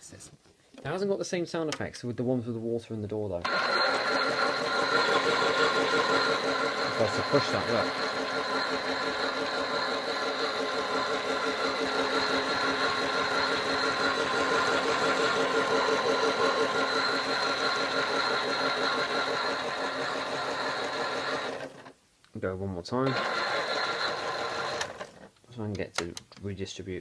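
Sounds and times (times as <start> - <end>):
toy washing machine motor whirring: 3.5 - 22.0, 23.1 - 25.3.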